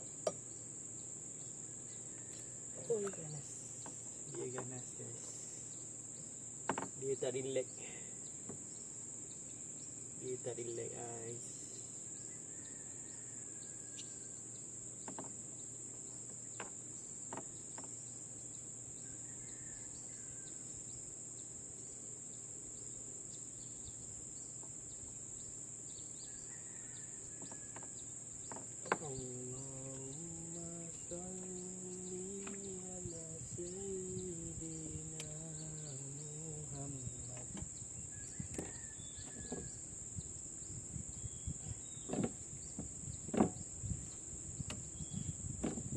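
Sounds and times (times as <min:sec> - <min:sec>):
insects trilling: 0:00.0 - 0:45.9
faint clicks: 0:32.3 - 0:32.7, 0:35.1 - 0:35.4.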